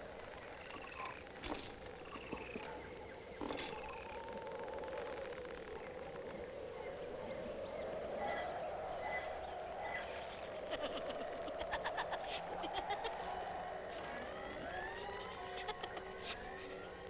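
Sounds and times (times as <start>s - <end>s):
overlapping rising wails: 11.1s - 17.0s.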